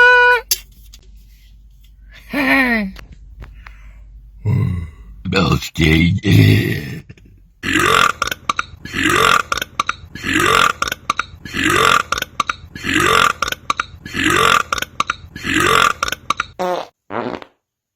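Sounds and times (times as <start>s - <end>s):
man belching loudly: 4.4s - 5.0s, 5.8s - 16.6s.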